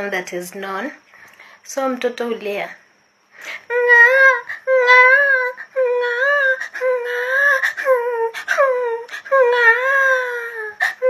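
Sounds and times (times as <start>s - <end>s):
woman imitating child crying: 3.7s - 11.0s.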